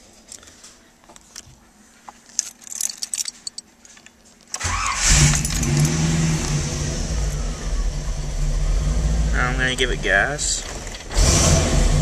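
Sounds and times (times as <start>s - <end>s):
keys jingling: 2.3s - 4.1s, 4.9s - 6.1s
car engine starting and idling: 4.6s - 12.0s.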